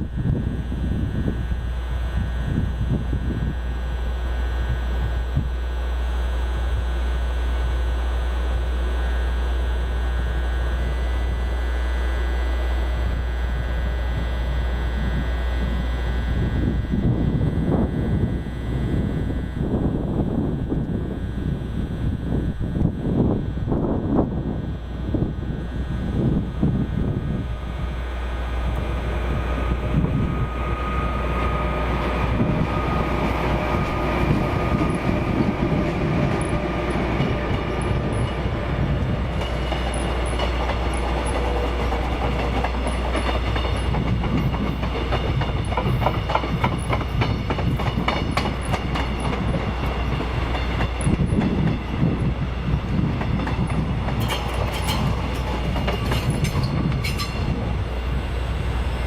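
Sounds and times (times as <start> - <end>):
train rumbling on track: 0.0 - 59.0
wheels clacking over rail joints: 31.2 - 58.1.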